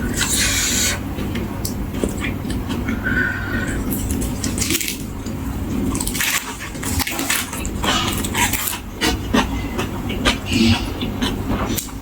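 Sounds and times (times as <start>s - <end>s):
wet chewing mouth sounds: 0.0s - 12.0s
crisp food crunches: 3.9s - 8.9s.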